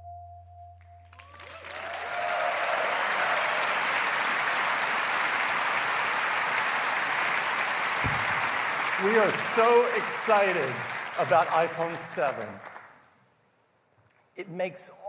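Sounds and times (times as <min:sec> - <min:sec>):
large audience applauding: 0:01.1 - 0:13.1.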